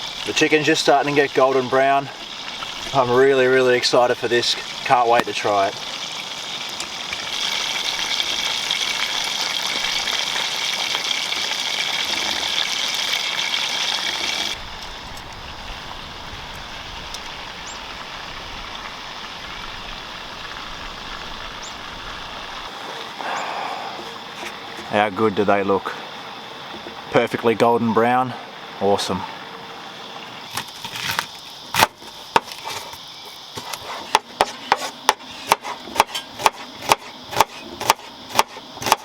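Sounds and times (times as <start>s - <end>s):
chicken sizzling in a pan: 0.0s - 14.6s
steady hiss: 0.0s - 39.0s.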